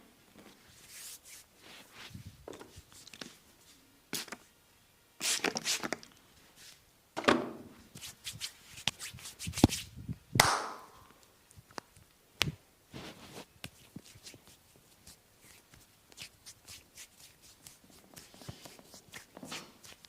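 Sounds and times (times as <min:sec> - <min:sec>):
hands slapping on a back: 0:10.4 - 0:10.9.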